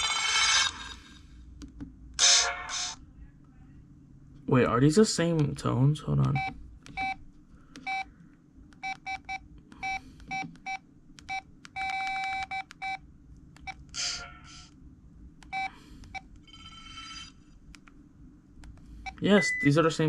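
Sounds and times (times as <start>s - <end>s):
phone keypad beeps: 6.3s - 7.2s, 7.8s - 8.1s, 8.8s - 13.0s, 15.5s - 16.3s.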